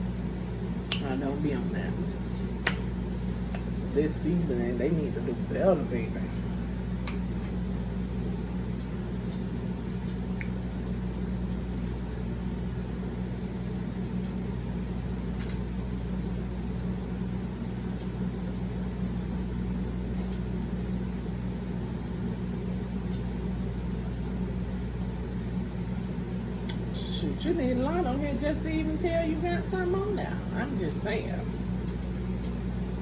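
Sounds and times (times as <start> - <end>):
low electrical hum: 0.0 - 33.0
soft chewing clicks: 10.0 - 11.3.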